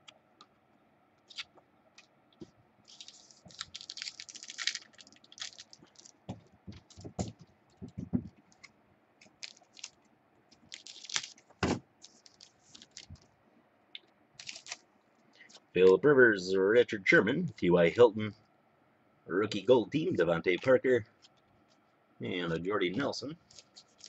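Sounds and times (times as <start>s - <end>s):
card packs crinkling: 1.3s - 1.6s, 2.9s - 7.4s, 8.5s - 13.3s, 14.4s - 15.6s, 22.5s - 24.0s
cards clicking and rustling: 1.3s - 13.3s, 14.4s - 14.8s.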